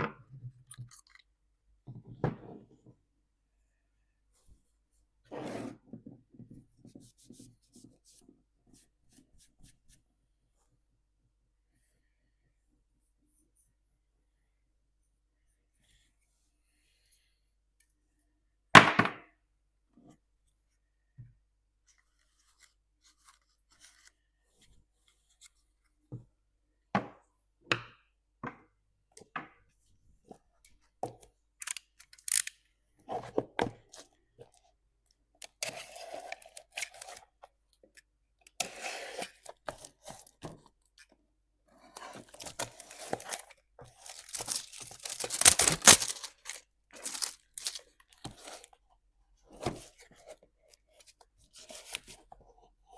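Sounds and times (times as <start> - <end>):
objects scraping and rustling: 41.7 - 48.8.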